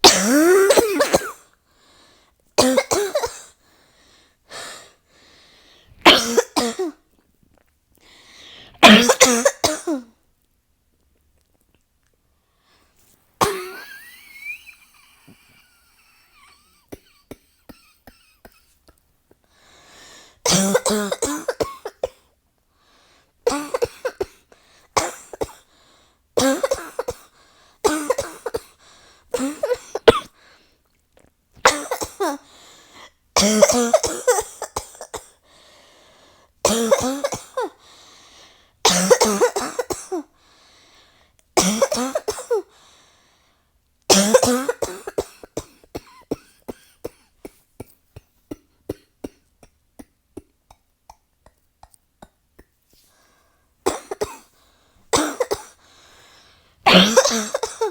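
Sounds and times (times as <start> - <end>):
person coughing: 0.0 - 1.5, 2.6 - 3.6, 6.0 - 7.0, 8.7 - 10.1, 13.4 - 18.8, 20.5 - 22.2, 23.5 - 24.4, 26.4 - 28.7, 29.3 - 30.4, 31.6 - 32.4, 33.4 - 35.4, 36.7 - 37.8, 38.9 - 40.3, 41.6 - 42.7, 44.1 - 50.5, 53.9 - 54.5, 55.1 - 55.8, 56.9 - 57.9.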